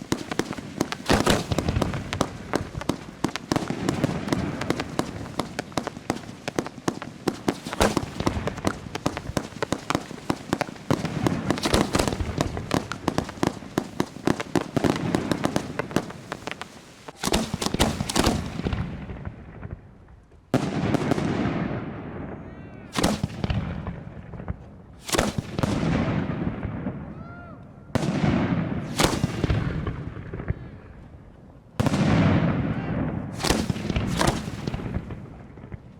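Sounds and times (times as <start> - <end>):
firework shell bursts: 0.0 - 14.7, 15.4 - 18.6, 23.0 - 23.4, 25.0 - 25.6, 28.9 - 29.5, 33.4 - 35.0
fireworks crackling: 0.0 - 21.7, 22.9 - 27.2, 28.0 - 31.2, 31.8 - 35.9.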